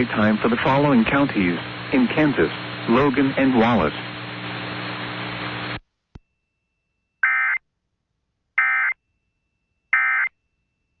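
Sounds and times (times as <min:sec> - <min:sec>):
receiver static and hum: 0:00.0 - 0:05.8.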